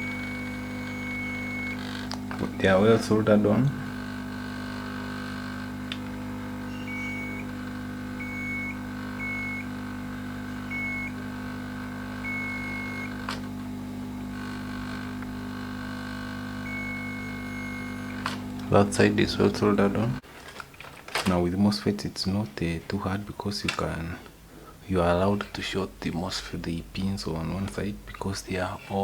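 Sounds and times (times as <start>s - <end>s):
steady low hum: 0.0s - 20.2s
multimeter short beeps: 6.7s - 7.4s, 8.2s - 9.7s, 10.7s - 11.2s.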